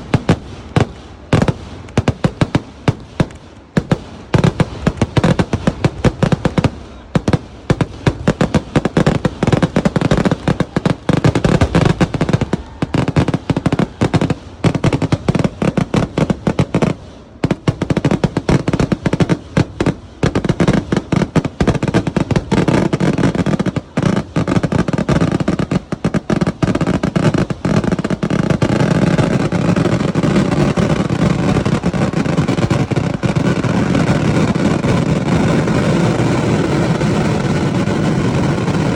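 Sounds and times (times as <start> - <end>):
fireworks cracks and bangs: 0.0 - 38.9.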